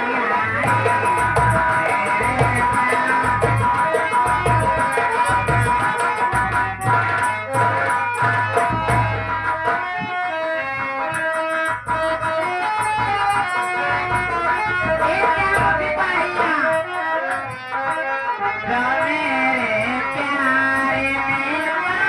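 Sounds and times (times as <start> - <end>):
plucked string melody: 0.0 - 22.0
steady drum beat: 0.6 - 10.0, 11.4 - 17.5.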